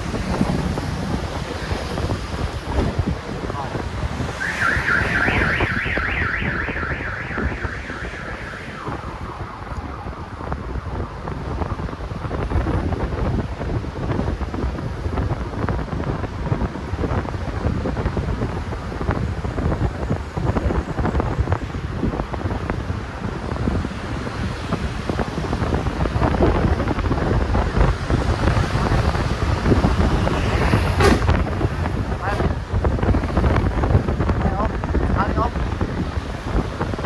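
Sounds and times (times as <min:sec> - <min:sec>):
traffic rumble: 0:00.0 - 0:37.0
wind buffeting microphone: 0:00.0 - 0:37.0
electronic warbling siren: 0:04.2 - 0:12.2.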